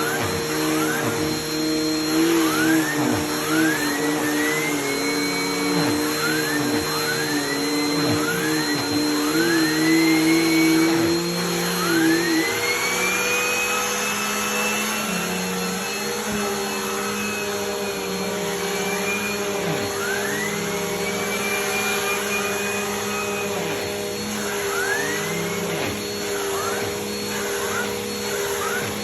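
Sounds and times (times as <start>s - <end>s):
vacuum cleaner motor hum: 0.0s - 29.0s
vacuum cleaner whine: 0.0s - 29.0s.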